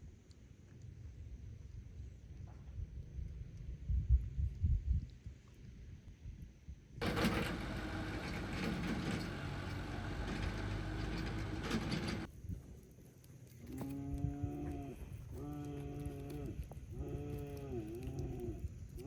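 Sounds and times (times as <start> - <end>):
cattle mooing: 13.8 - 18.7.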